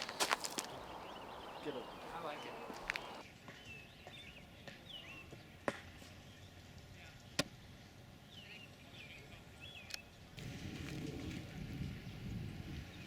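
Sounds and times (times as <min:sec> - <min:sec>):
small birds chirping: 0:00.0 - 0:10.4.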